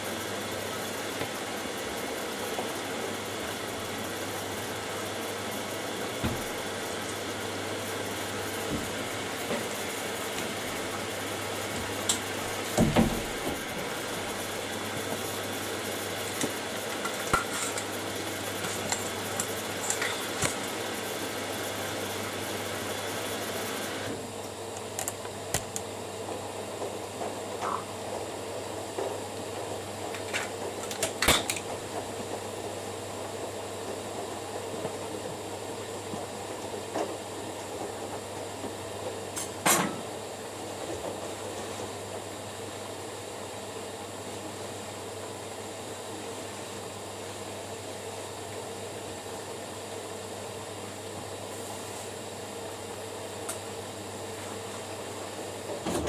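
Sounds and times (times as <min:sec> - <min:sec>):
washing machine drums tumbling laundry: 0:04.7 - 0:20.9.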